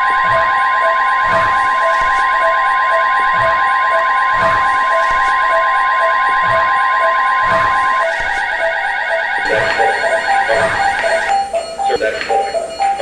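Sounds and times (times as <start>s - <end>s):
electronic alert tone: 0.0s - 13.0s
pulsing beep: 0.0s - 13.0s.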